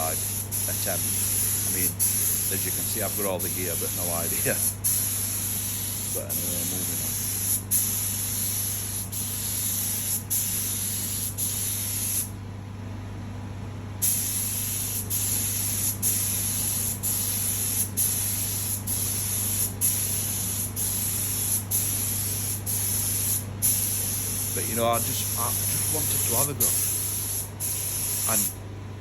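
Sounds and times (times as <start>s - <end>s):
paint spray gun hissing: 0.0s - 12.3s, 14.0s - 28.6s
steady low hum: 0.0s - 29.0s.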